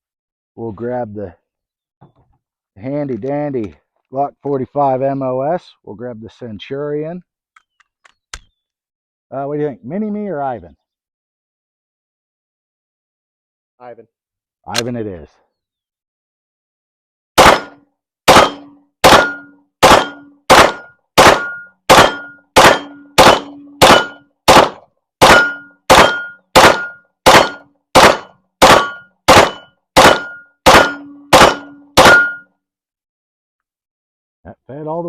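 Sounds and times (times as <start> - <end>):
pistol single shots: 17.4 - 32.4.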